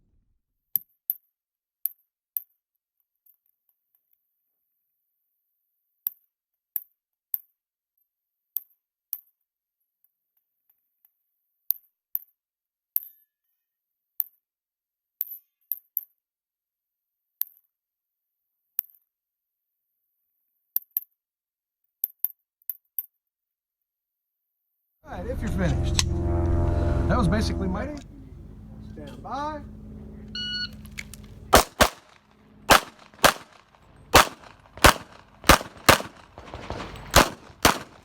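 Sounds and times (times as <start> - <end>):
pistol shots: 31.5 - 38.0.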